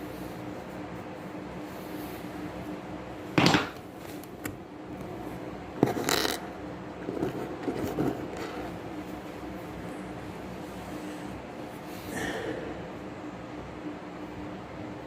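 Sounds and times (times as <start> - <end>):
tool scraping plastic case: 5.8 - 6.4.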